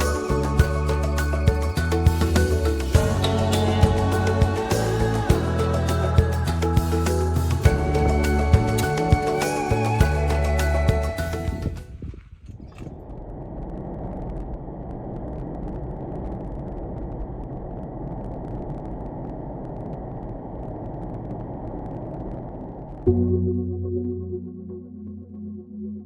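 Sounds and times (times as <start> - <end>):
music: 0.0 - 12.0, 23.1 - 26.0.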